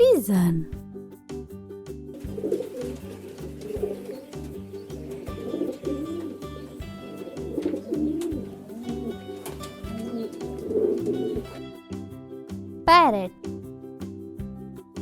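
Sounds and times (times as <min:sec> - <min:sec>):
background music with a beat: 0:00.8 - 0:12.8, 0:13.4 - 0:15.0
pigeon cooing: 0:02.2 - 0:11.7.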